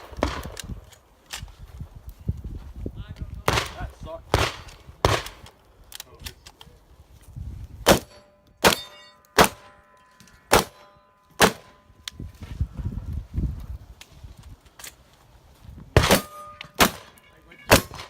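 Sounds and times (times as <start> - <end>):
shotgun shots: 3.5 - 5.4, 7.8 - 9.8, 10.5 - 11.8, 16.0 - 18.0
steel target ringing: 8.0 - 11.9, 16.0 - 17.9.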